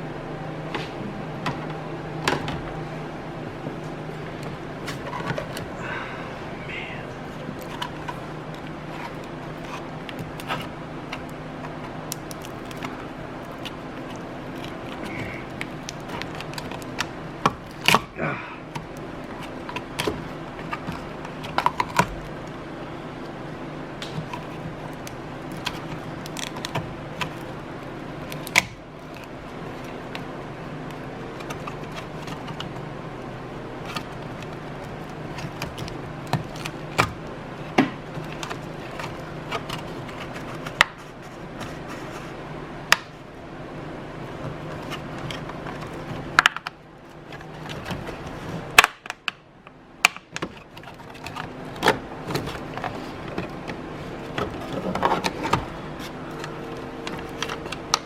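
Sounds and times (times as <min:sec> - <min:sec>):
steady low hum: 0:00.0 - 0:58.0.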